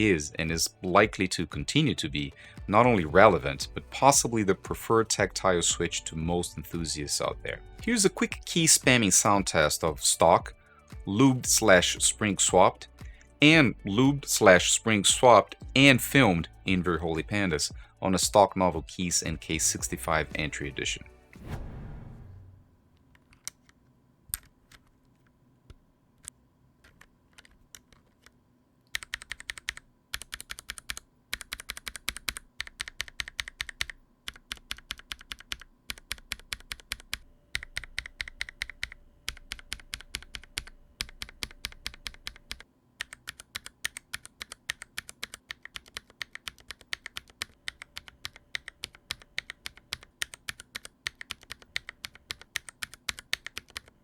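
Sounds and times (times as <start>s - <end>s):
mechanical keyboard clacking: 28.9s - 54.0s.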